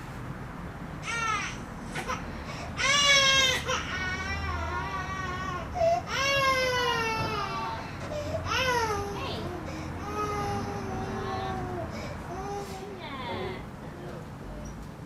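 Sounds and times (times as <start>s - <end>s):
toddler crying: 1.0s - 2.2s, 2.8s - 13.0s.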